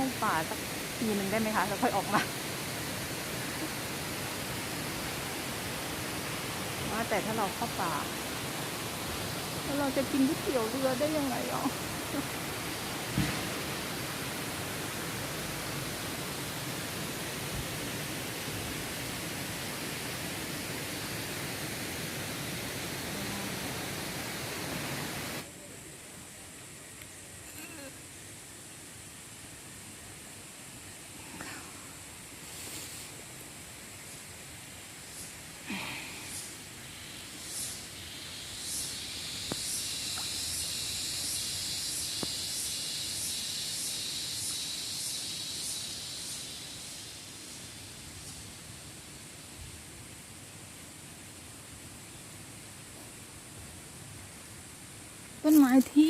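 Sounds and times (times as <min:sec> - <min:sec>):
cicadas buzzing: 0:00.0 - 0:56.0.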